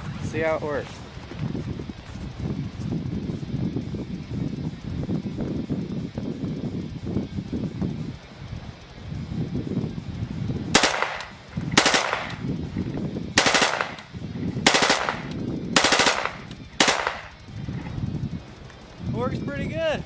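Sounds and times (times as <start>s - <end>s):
rifle firing rapid bursts: 10.7s - 12.4s, 13.4s - 17.3s.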